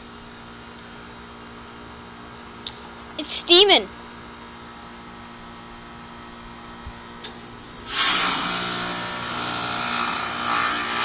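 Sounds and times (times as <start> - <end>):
heat pump unit humming: 0.0 - 11.0
valve click: 6.9 - 9.3
loud hissing whoosh: 7.3 - 9.0.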